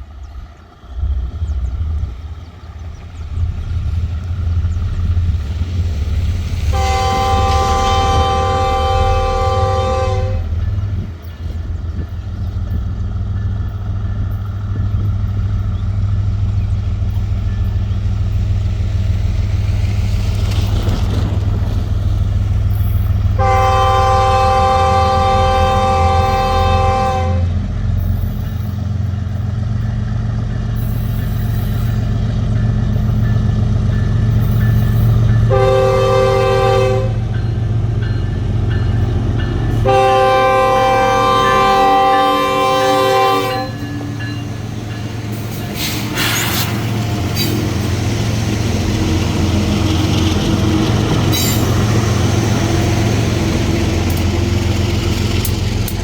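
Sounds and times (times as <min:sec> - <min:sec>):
diesel locomotive rumbling: 0:00.0 - 0:56.0
locomotive air horn: 0:06.7 - 0:10.7, 0:23.3 - 0:27.6, 0:35.5 - 0:37.4, 0:39.7 - 0:44.2, 0:45.8 - 0:46.8.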